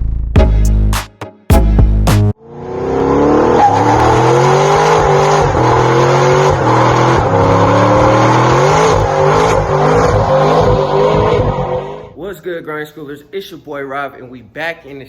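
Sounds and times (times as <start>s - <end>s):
car engine revving: 2.4s - 12.2s.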